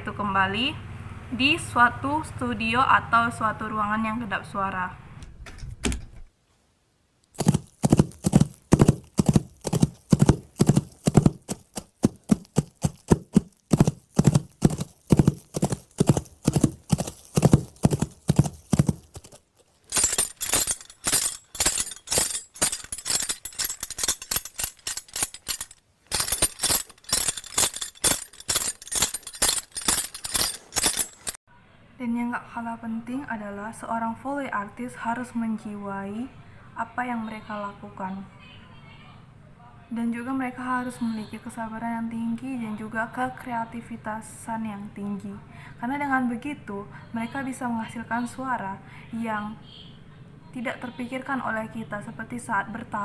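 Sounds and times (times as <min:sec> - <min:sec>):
hoofbeats clip-clopping: 0:07.4 - 0:31.4.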